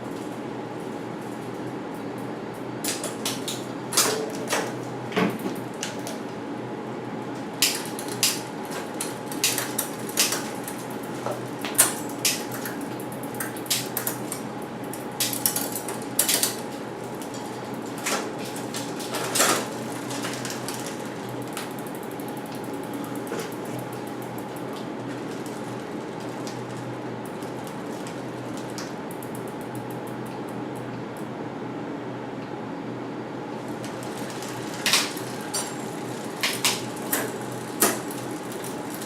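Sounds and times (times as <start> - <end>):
steady background hum: 0.0 - 39.0.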